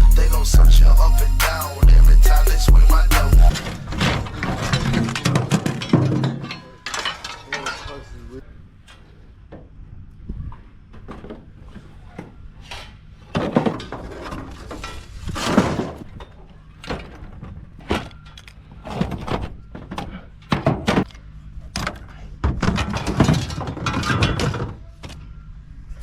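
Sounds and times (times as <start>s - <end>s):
tools and materials clattering: 3.5s - 9.2s, 10.9s - 25.3s.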